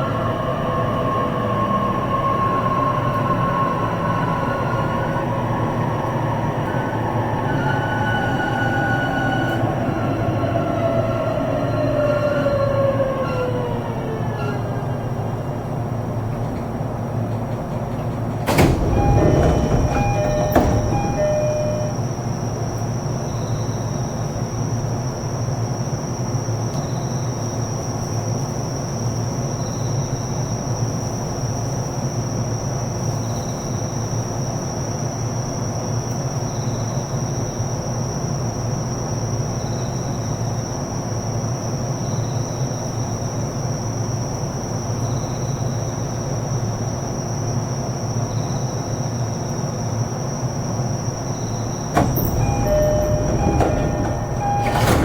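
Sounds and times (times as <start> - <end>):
train doors closing: 0.0 - 25.1, 49.6 - 55.0
train equipment hum and whine: 0.0 - 55.0
faint high beep: 19.0 - 22.0.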